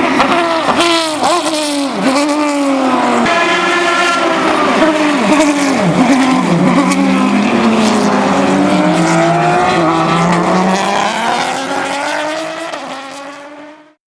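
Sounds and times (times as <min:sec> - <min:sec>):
race car engine at high revs: 0:00.0 - 0:14.0.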